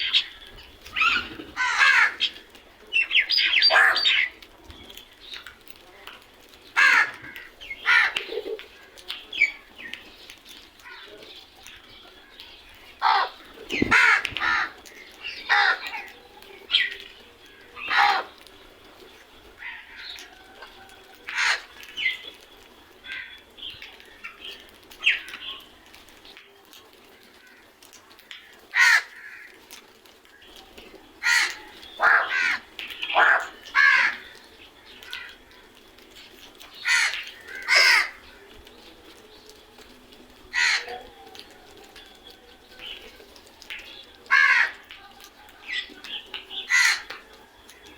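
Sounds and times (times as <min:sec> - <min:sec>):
crows cawing: 0:00.0 - 0:02.4, 0:03.1 - 0:04.3, 0:06.7 - 0:08.6, 0:13.0 - 0:16.1, 0:17.8 - 0:18.4, 0:21.3 - 0:21.9, 0:23.0 - 0:23.4, 0:28.3 - 0:29.6, 0:31.2 - 0:35.6, 0:36.7 - 0:38.5, 0:40.5 - 0:41.2, 0:44.2 - 0:44.9, 0:46.5 - 0:47.2.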